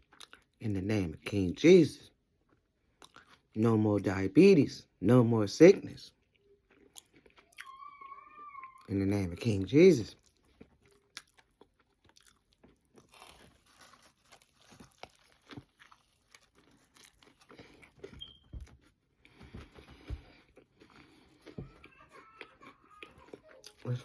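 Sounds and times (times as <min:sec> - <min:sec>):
person chewing food crunching: 0:00.0 - 0:00.6, 0:02.2 - 0:03.6, 0:06.1 - 0:08.1, 0:10.1 - 0:24.0.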